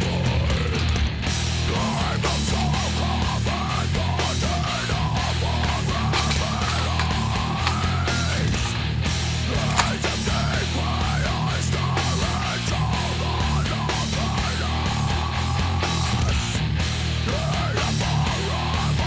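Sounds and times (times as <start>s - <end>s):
heavy metal music with guitar: 0.0s - 19.0s
sharp click: 9.6s - 10.2s.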